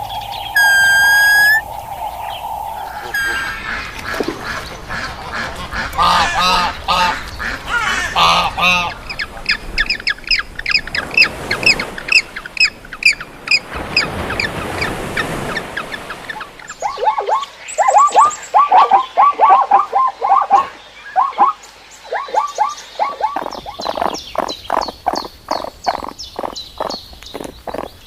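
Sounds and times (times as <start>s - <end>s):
poultry chirping: 0.0s - 1.7s, 2.9s - 7.6s, 16.8s - 28.0s
chorus of rapid bird calls: 0.0s - 28.0s.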